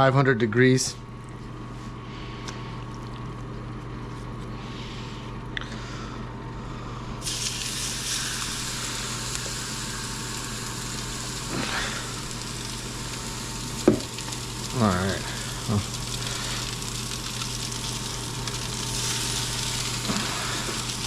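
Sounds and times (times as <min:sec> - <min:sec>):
steady low hum: 0:00.0 - 0:21.0
steak sizzling in oil: 0:07.2 - 0:21.0.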